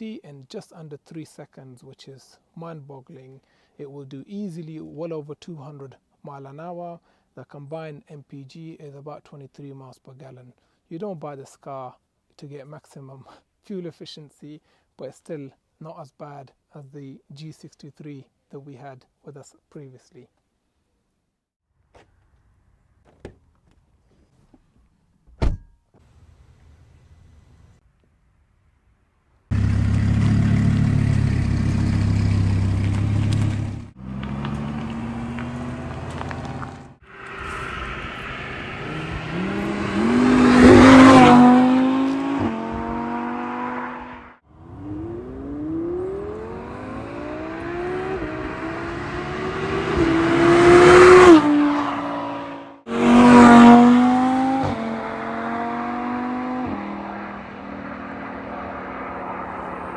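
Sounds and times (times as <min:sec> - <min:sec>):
car engine accelerating hard: 0:29.5 - 0:59.9.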